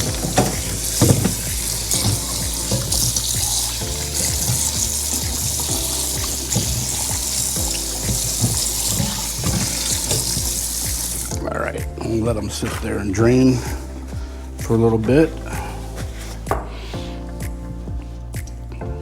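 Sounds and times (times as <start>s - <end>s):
tap running into sink: 0.0s - 11.3s.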